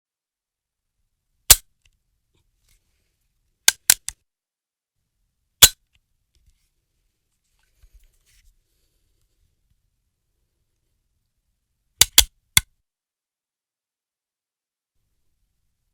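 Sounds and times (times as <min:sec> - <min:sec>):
gun action clicking: 0:03.7 - 0:04.2, 0:12.0 - 0:12.3.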